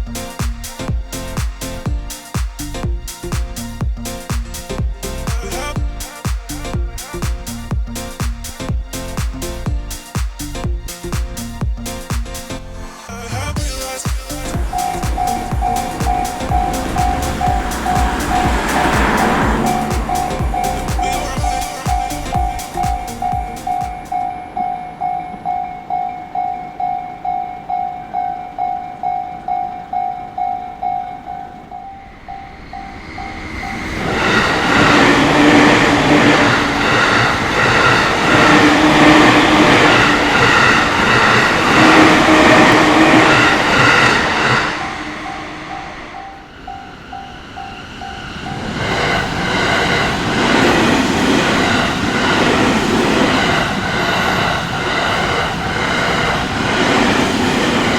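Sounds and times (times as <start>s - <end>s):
train passing with wheel clatter: 13.6s - 57.9s
level-crossing warning bell: 13.7s - 57.9s.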